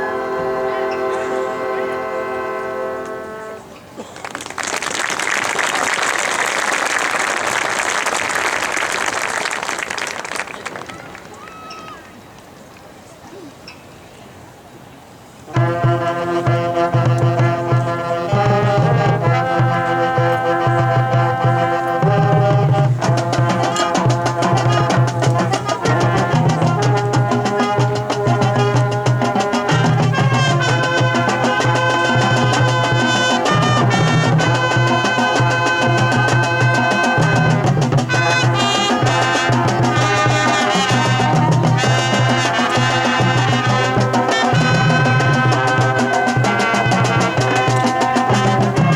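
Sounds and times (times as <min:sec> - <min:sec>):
brass chords: 0:00.0 - 0:04.0, 0:15.5 - 0:48.9
drumline quick strokes: 0:15.5 - 0:48.9
pounding low drum: 0:15.6 - 0:48.9.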